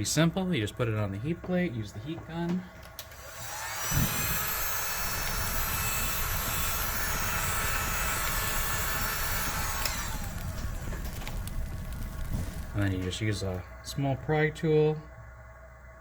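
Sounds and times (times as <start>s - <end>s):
heat gun blowing hot air: 3.0s - 12.7s.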